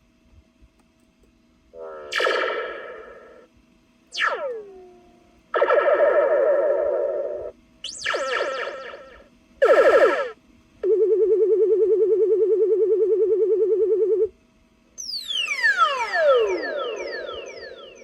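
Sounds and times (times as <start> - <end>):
fast-warbling tone: 1.8 - 3.4, 4.1 - 5.0, 5.6 - 10.4, 15.2 - 18.0
electronic sci-fi radio effects: 1.8 - 3.5, 4.1 - 5.0, 5.6 - 10.4, 15.0 - 18.0
falling zap: 2.0 - 3.4, 4.1 - 5.0, 5.6 - 10.4, 15.4 - 18.0
rapidly falling pitch sweeps: 4.2 - 10.4, 15.0 - 18.0.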